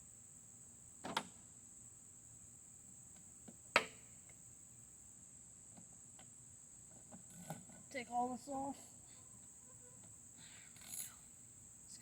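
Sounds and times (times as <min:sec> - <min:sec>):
crickets trilling: 0:04.0 - 0:12.0.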